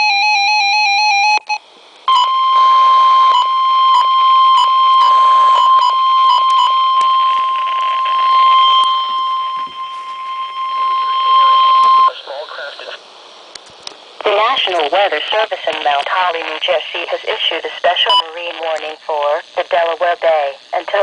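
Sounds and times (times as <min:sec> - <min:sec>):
steady warning alert tone: 0:02.1 - 0:12.4
warbling data tone: 0:02.1 - 0:12.8.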